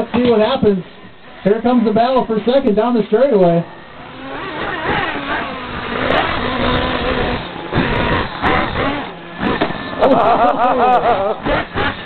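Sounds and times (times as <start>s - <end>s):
rc car motors whining: 3.6s - 12.0s.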